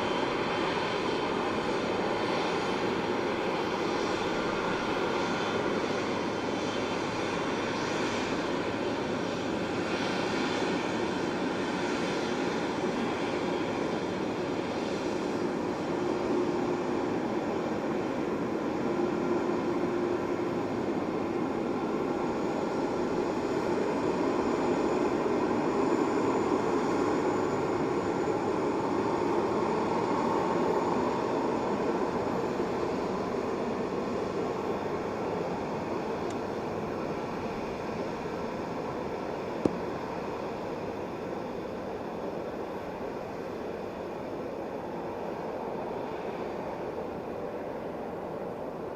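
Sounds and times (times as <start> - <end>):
jet engines running: 0.0 - 48.9.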